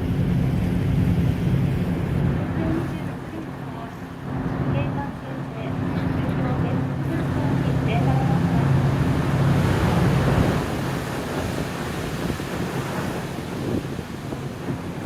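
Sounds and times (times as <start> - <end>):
boat engine humming: 0.0 - 15.0
water rushing: 0.0 - 15.0
wind buffeting microphone: 0.0 - 15.0.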